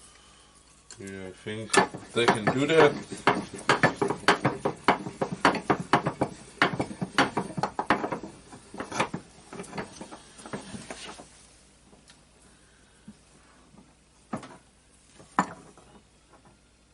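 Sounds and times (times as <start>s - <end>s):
hammer knocking metal punch: 1.7s - 9.8s.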